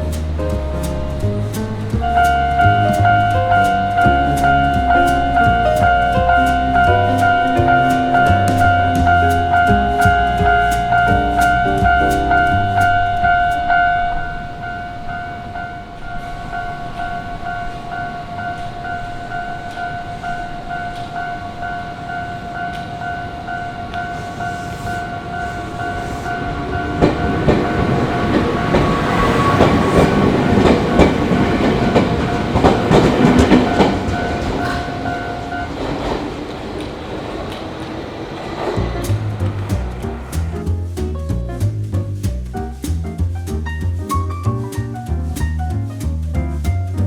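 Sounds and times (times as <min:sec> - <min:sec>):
railway crossing alarm ringing: 0:00.0 - 0:40.7
train wheels clattering on rails: 0:00.0 - 0:44.2.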